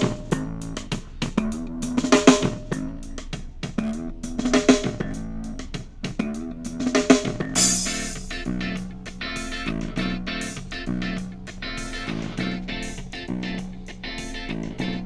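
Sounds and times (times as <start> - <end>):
drum and guitar music on speaker: 0.0 - 15.0.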